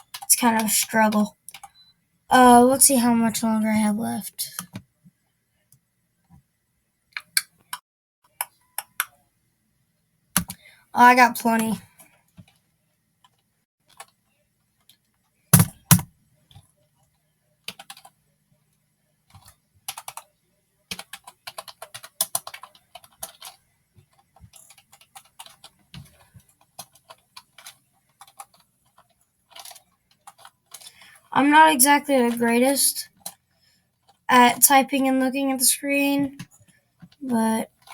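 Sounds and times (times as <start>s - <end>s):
louder knocks: 15.6s - 16.0s
keyboard typing clicks: 15.6s - 16.1s.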